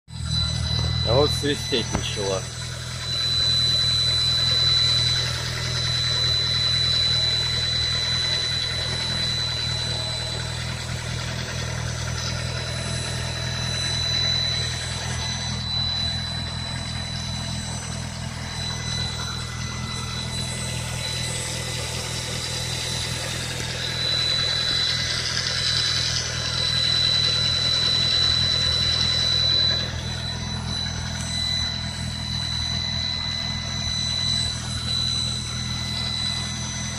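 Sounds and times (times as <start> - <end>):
car engine idling: 0.0 - 36.9
high-pitched whistle: 0.1 - 36.9.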